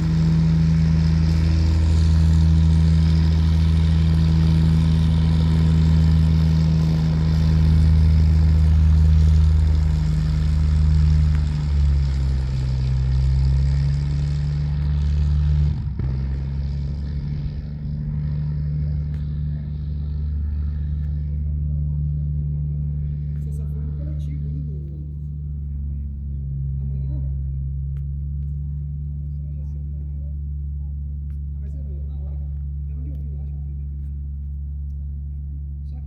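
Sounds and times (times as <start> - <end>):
light aircraft engine running: 0.0 - 36.0.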